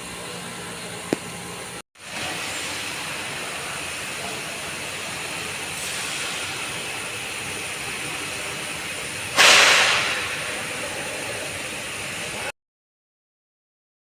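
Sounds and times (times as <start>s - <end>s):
sudden loud hiss: 2.0s - 11.1s.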